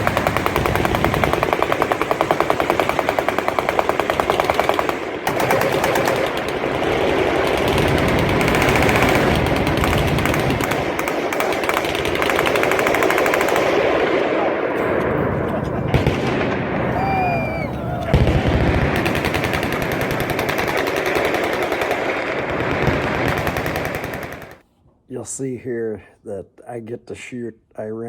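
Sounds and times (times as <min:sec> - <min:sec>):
machine-gun fire: 0:00.0 - 0:14.4, 0:15.9 - 0:16.9, 0:18.1 - 0:24.6.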